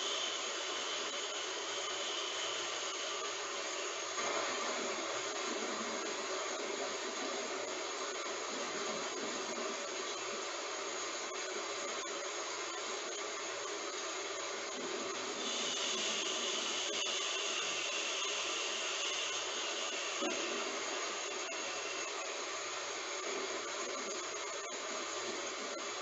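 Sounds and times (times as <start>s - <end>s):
heavy rain hissing: 0.0s - 26.0s
rain patters: 3.3s - 17.0s.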